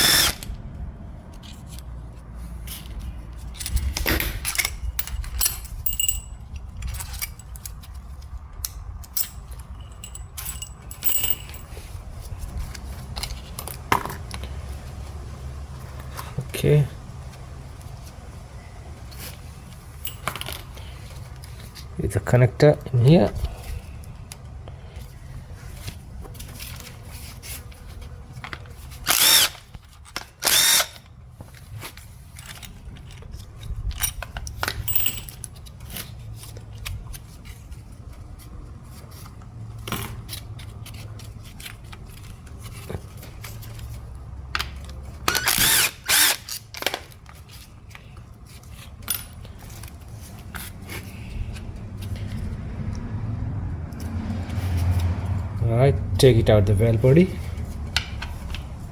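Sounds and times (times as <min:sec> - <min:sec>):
power drill spinning out bolts: 0:00.0 - 0:00.5, 0:28.8 - 0:31.1, 0:45.2 - 0:47.1
metallic clicks of tools: 0:03.5 - 0:11.7, 0:32.3 - 0:35.6.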